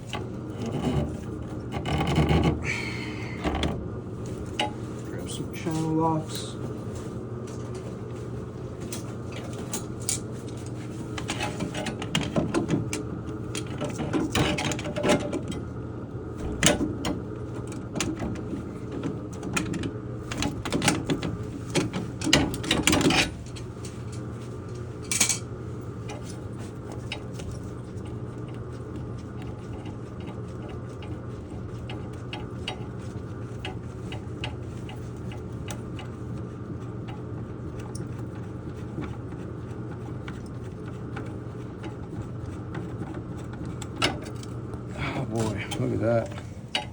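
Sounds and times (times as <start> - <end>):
low hum: 0.1 - 11.0.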